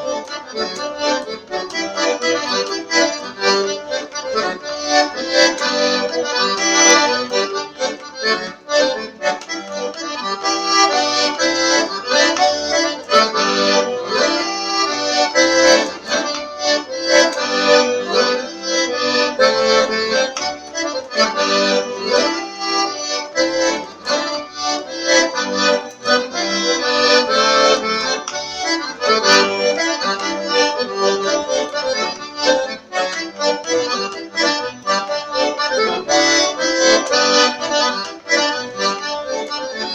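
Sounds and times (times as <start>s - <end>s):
accordion playing lively tune: 0.0s - 39.9s.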